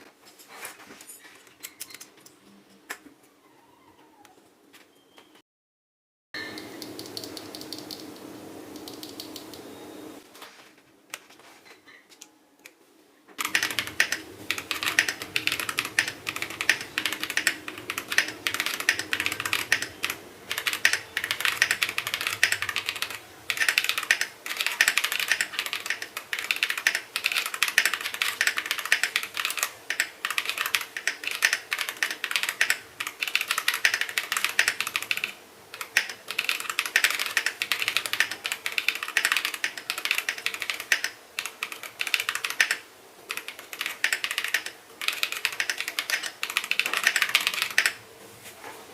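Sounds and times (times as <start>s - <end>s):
mechanical keyboard typing: 6.8s - 9.6s, 13.4s - 48.0s.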